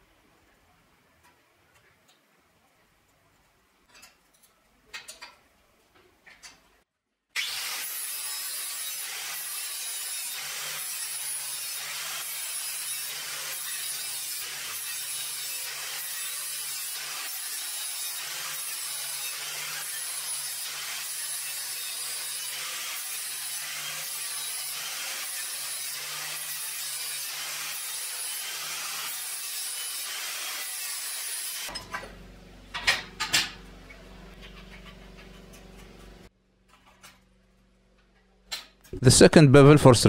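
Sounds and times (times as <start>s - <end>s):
angle grinder grinding steel blade: 7.4s - 31.8s.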